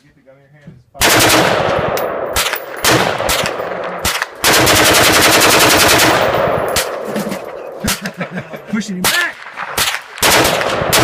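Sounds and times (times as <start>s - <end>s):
rifle firing rapid bursts: 1.0s - 7.0s, 9.4s - 11.0s.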